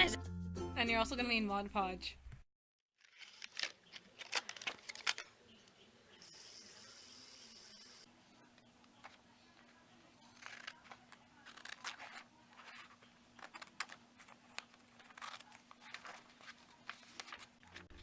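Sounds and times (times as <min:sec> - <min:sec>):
paper rustling: 0:03.0 - 0:05.3, 0:09.0 - 0:18.0
scissors snipping paper: 0:10.2 - 0:17.5.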